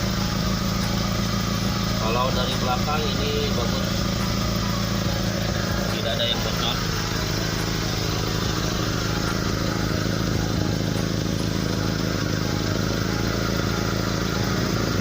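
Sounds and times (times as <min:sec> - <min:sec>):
truck engine idling roughly: 0:00.0 - 0:15.0.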